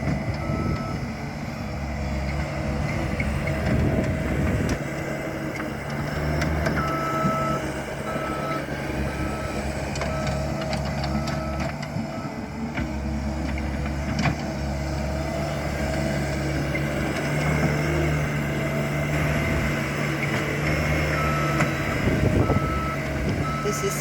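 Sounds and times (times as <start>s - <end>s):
diesel engine running: 0.0s - 24.0s
back-up alarm beeping: 6.8s - 11.6s.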